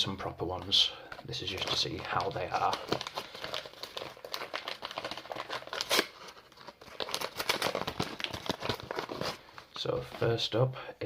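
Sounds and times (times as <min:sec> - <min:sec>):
packaging crinkling and tearing: 0:01.3 - 0:09.8.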